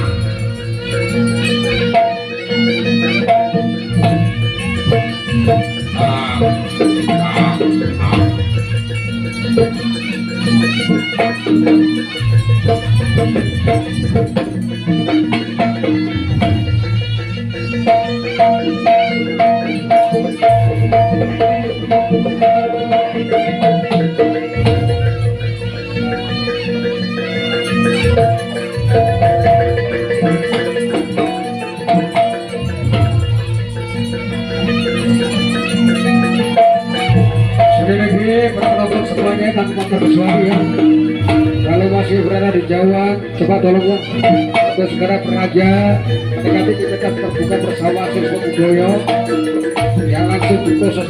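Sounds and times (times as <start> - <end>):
low bass: 0.0 - 2.0, 3.9 - 10.4, 24.5 - 31.1, 41.0 - 44.0
drums: 0.0 - 51.0
rattling percussion: 0.0 - 51.0
wavering melodic line: 0.0 - 51.0
sustained low tones: 3.9 - 10.0.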